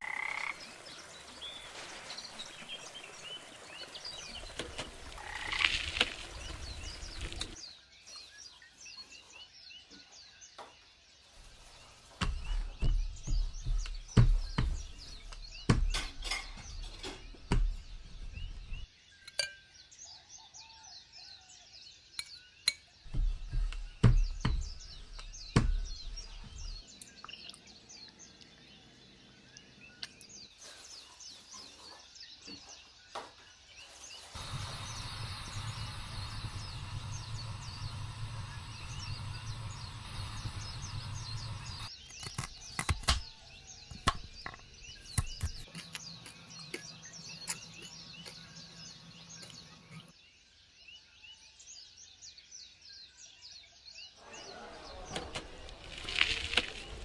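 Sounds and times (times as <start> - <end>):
birds chirping: 0.0 - 20.8, 21.9 - 50.4
cooking clinks and knocks: 15.7 - 17.7, 43.9 - 50.1.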